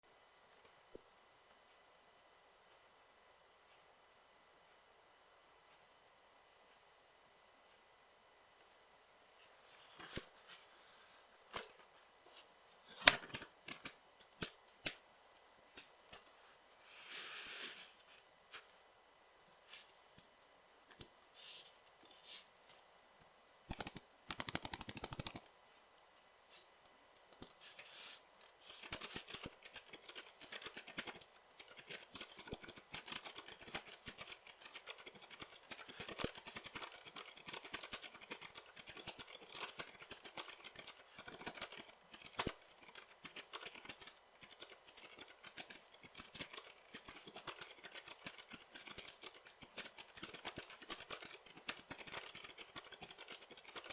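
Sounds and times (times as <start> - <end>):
typing on keyboard: 23.7 - 25.5, 28.7 - 53.9.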